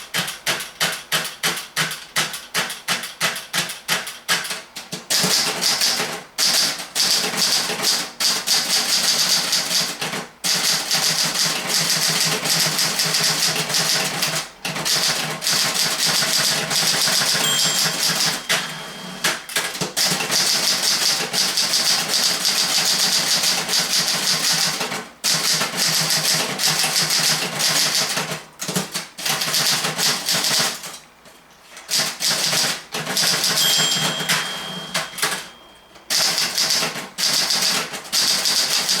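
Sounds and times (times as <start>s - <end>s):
manual typewriter keystrokes: 0.1s - 31.0s, 31.9s - 39.0s
typewriter bell ringing: 16.1s - 20.7s, 33.1s - 36.9s.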